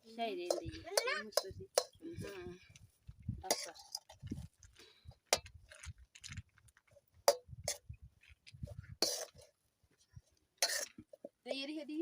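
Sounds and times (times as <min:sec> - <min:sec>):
metal spoon scraping a pot: 0:03.4 - 0:04.4, 0:07.3 - 0:08.0, 0:08.6 - 0:11.3.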